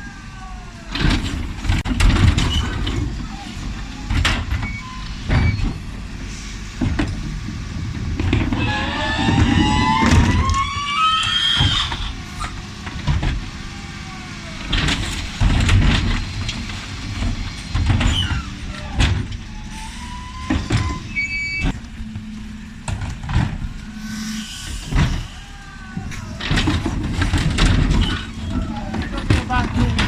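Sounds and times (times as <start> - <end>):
hydraulic whine and squeal: 2.3 - 6.5, 8.4 - 12.8, 13.4 - 29.7
bins banging against lift: 14.6 - 21.8, 24.8 - 30.0.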